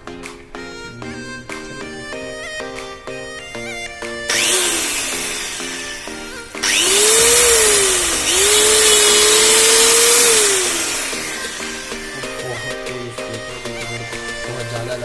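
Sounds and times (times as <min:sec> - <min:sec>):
background music: 0:00.0 - 0:15.0
angle grinder whining: 0:04.3 - 0:12.9.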